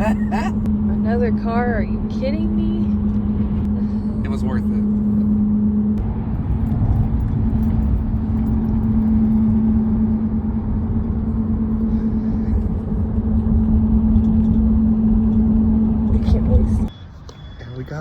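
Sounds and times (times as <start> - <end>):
road noise: 0.0 - 18.0
vehicle engine rumble: 0.0 - 18.0.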